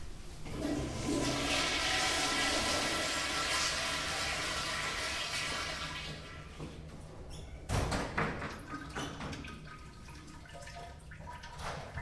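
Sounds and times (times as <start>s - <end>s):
rushing water noise: 0.5s - 6.0s
door banging shut: 7.7s - 8.6s.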